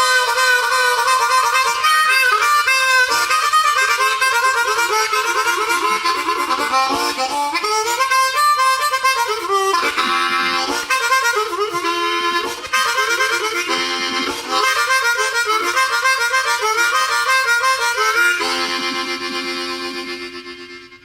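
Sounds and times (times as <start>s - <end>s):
lively harmonica tune: 0.0s - 21.0s.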